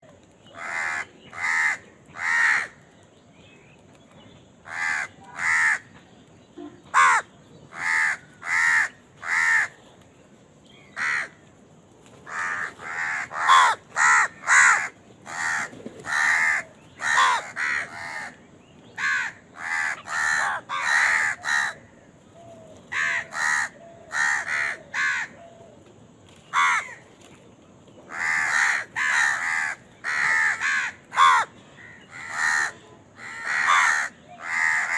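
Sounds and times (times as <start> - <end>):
crows cawing: 0.5 - 2.9, 4.6 - 6.0, 6.9 - 9.8, 10.9 - 11.4, 12.2 - 18.4, 19.0 - 22.1, 22.9 - 25.6, 26.5 - 27.0, 28.1 - 34.9.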